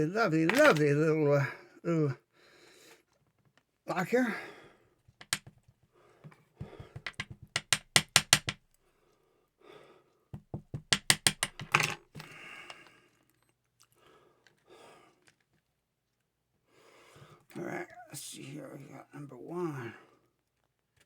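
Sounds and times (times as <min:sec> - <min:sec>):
lock parts clicking: 0:00.5 - 0:00.9, 0:05.2 - 0:05.5, 0:07.0 - 0:08.8, 0:10.8 - 0:12.3.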